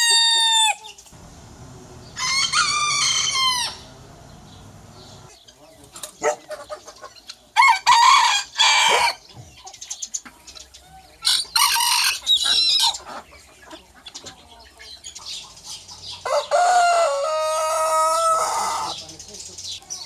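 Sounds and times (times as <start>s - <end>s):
rooster crowing: 2.0s - 4.0s, 16.2s - 19.0s.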